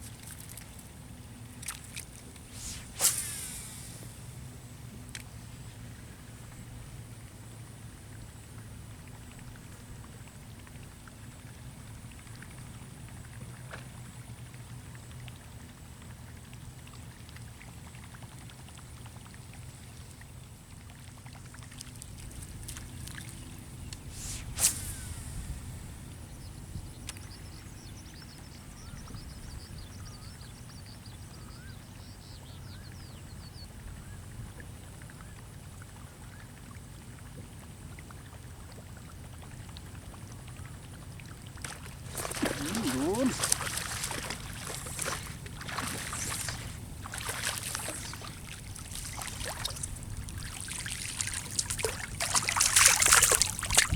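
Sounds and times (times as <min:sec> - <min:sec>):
water splashing: 0:01.6 - 0:04.4, 0:41.6 - 0:53.9
wind rumbling on microphone: 0:22.1 - 0:30.2, 0:41.9 - 0:53.9.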